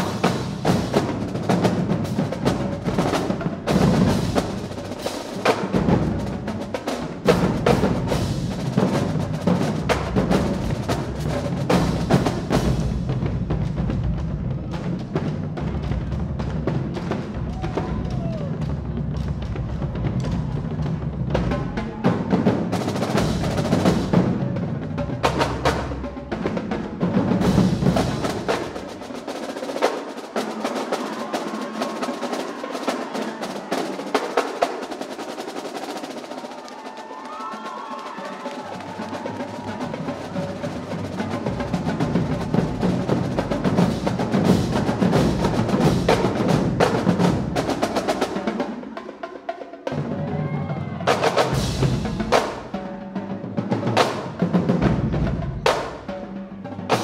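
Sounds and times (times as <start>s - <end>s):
bass drums: 0.0s - 29.0s, 38.6s - 48.5s, 50.0s - 53.0s, 54.0s - 57.0s
snare drums: 0.0s - 57.0s
tenor drums: 0.0s - 57.0s.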